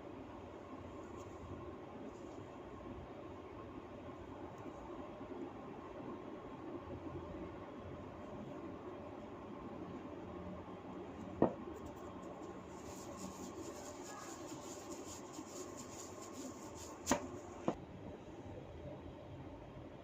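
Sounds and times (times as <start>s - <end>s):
hair rustling: 11.8s - 17.8s.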